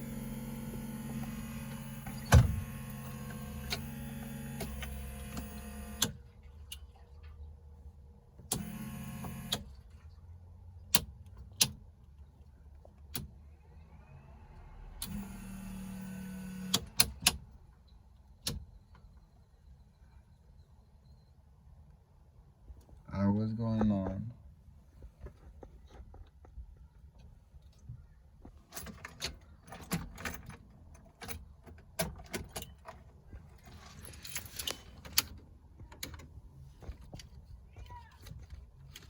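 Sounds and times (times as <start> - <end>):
starter motor whirring: 0.0 - 6.2, 8.5 - 9.7, 14.0 - 17.2.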